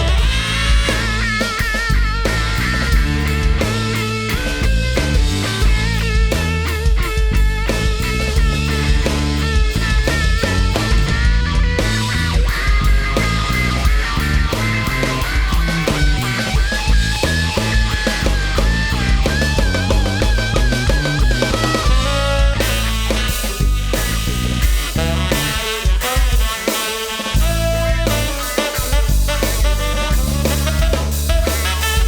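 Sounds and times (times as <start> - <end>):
bass guitar: 0.0 - 32.0
drum kit beat: 0.0 - 32.0
lead electric guitar: 0.0 - 32.0.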